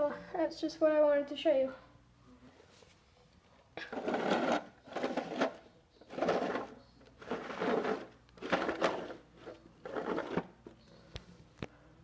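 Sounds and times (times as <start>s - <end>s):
rustling handling noise: 2.6s - 10.8s.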